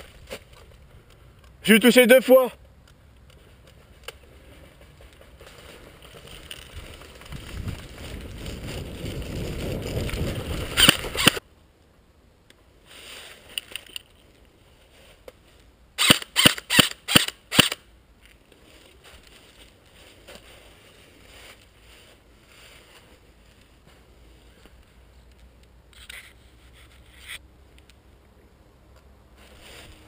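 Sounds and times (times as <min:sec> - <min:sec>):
rustling noise: 0:03.3 - 0:11.4, 0:12.8 - 0:15.7, 0:18.2 - 0:27.4, 0:29.3 - 0:30.0
airsoft rifle shots: 0:10.8 - 0:11.4, 0:16.0 - 0:17.8.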